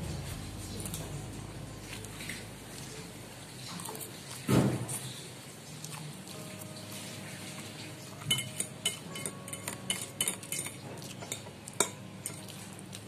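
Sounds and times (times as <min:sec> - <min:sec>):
cutlery clinking against a dish: 0:08.1 - 0:12.8.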